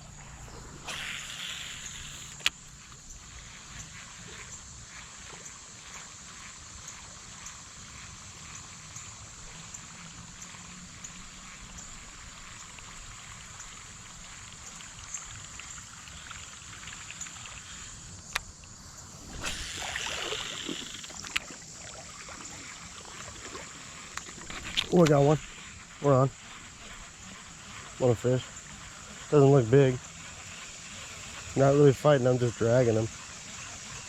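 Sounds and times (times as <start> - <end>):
creek water trickling: 0.0 - 34.0
steady high hiss: 0.0 - 34.0
water splashing: 12.5 - 28.4.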